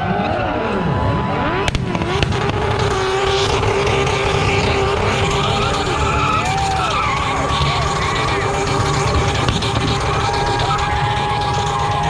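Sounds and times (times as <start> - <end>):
car engine revving high: 0.0 - 12.0
tyres spinning: 0.0 - 12.0
sharp crack: 1.6 - 12.0.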